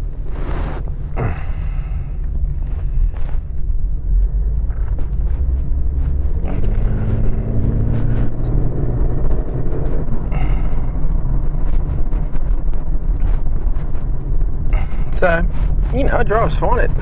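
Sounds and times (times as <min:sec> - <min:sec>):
car engine and road rumble: 0:00.0 - 0:17.0.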